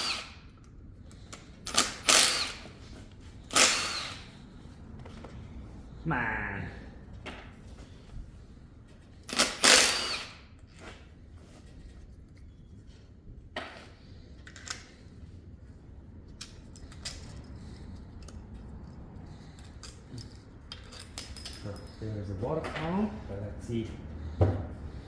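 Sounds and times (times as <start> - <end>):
tools clinking on metal parts: 19.6 - 23.0.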